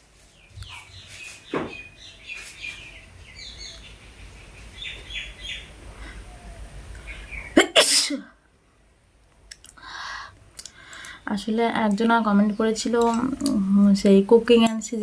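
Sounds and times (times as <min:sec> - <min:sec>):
faint high chirping: 0:00.3 - 0:07.6.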